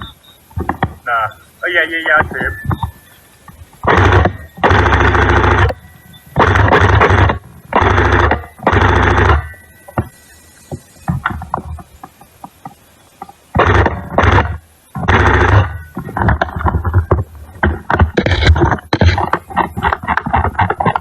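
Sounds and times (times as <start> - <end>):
gearbox buzzing: 0.0 - 12.6, 13.2 - 21.0
airsoft rifle full-auto bursts: 3.8 - 10.1, 13.5 - 19.2.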